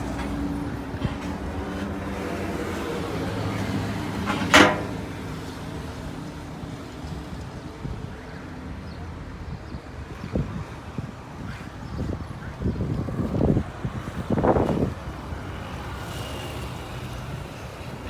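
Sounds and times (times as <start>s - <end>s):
loud short clank: 4.2s - 5.3s.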